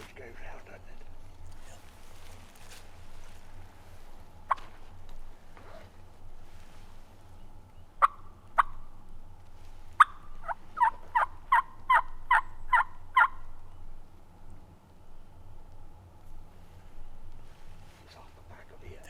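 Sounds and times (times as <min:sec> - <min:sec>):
turkey yelping: 0:04.4 - 0:04.9, 0:08.0 - 0:09.0, 0:10.0 - 0:13.7.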